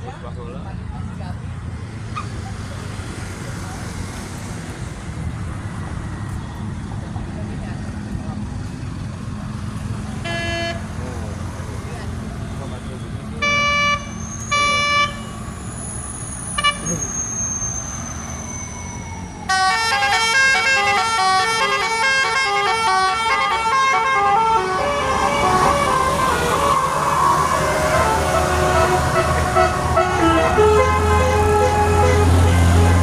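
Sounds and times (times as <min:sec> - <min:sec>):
bus engine running: 0:00.0 - 0:33.0
bus melody horn: 0:10.2 - 0:11.0, 0:13.4 - 0:15.4, 0:16.5 - 0:17.2, 0:19.5 - 0:33.0.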